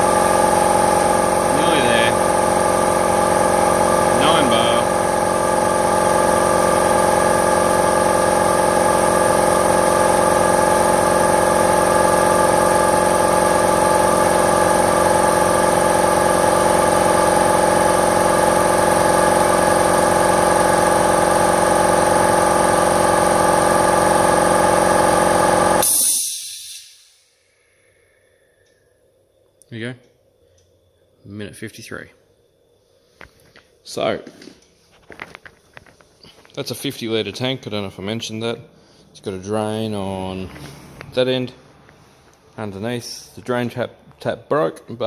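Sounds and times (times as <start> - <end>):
air compressor running: 0.0 - 28.8, 32.9 - 43.4
air hiss: 25.8 - 27.4.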